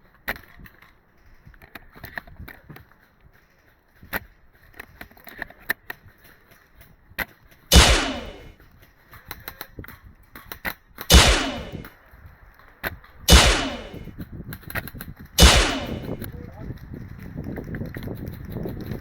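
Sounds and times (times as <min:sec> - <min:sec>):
echoing gunshots: 0:07.7 - 0:08.5, 0:11.1 - 0:11.9, 0:13.3 - 0:14.1, 0:15.4 - 0:16.3.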